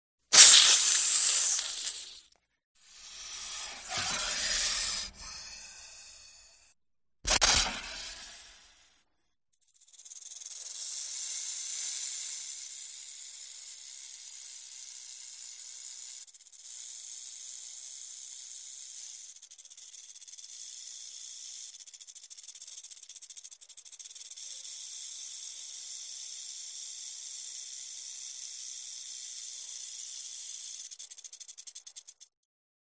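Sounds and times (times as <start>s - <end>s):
snake hissing: 0.3s - 6.7s.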